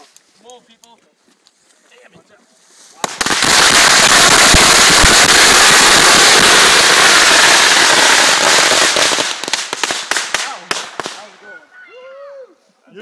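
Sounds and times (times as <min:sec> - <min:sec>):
firecrackers exploding: 0:03.0 - 0:11.4.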